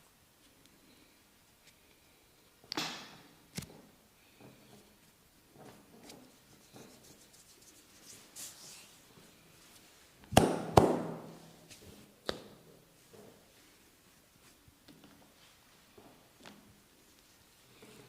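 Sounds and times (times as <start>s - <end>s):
rubbing and rustling: 4.6s - 10.2s.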